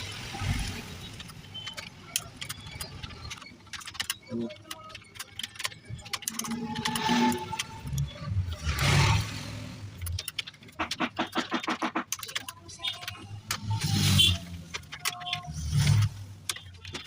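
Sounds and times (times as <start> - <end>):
keyboard key clicks: 10.0 - 17.0.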